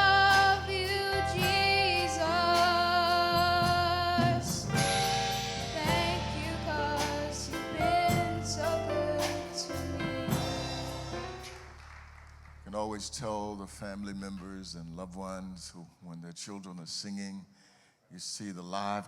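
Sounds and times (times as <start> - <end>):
children's choir singing: 0.0 - 3.6, 4.2 - 10.8
instrumental accompaniment: 0.0 - 11.9.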